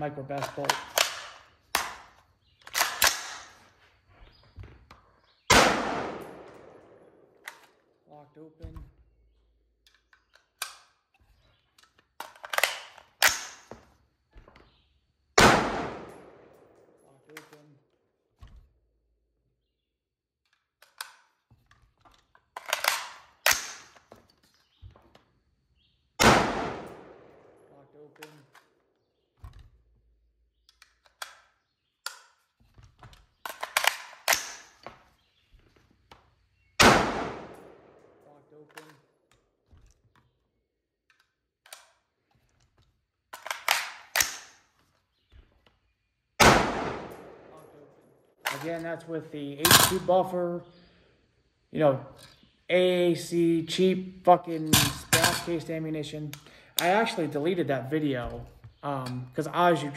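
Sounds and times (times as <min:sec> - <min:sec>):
rifle handling clacks: 0:00.3 - 0:03.8, 0:07.4 - 0:07.9, 0:09.8 - 0:14.7, 0:20.4 - 0:25.3, 0:28.1 - 0:28.8, 0:30.6 - 0:35.3, 0:37.4 - 0:40.3, 0:41.0 - 0:45.8, 0:47.0 - 0:49.0
rifle shot: 0:05.5 - 0:07.3, 0:15.4 - 0:16.8, 0:26.2 - 0:27.7, 0:36.8 - 0:38.2, 0:46.4 - 0:47.8.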